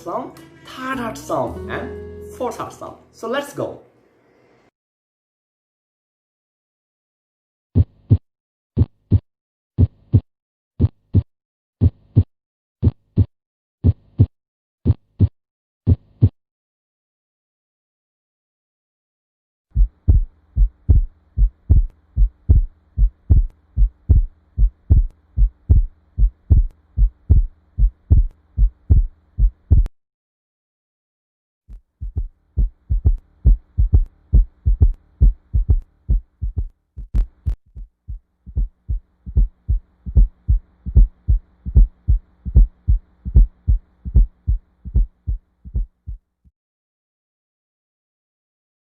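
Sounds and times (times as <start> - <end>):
faint steady hum: 3.8 - 4.7, 19.8 - 29.9, 32.0 - 45.9
heartbeat thumps: 7.8 - 8.2, 8.8 - 9.2, 9.8 - 10.2, 10.8 - 15.3, 15.9 - 16.4, 19.7 - 29.9, 31.7 - 46.2.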